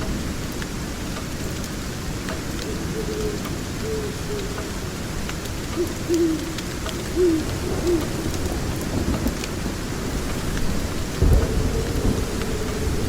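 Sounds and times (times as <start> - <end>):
steady rain: 0.0 - 13.0
thunder rumbling: 0.0 - 13.0
fire crackling: 4.4 - 13.0.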